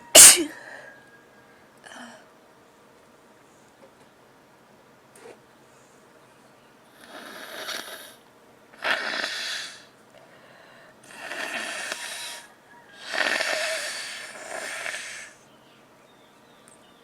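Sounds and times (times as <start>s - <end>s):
person blowing nose into tissue: 8.8s - 9.9s, 11.1s - 15.4s.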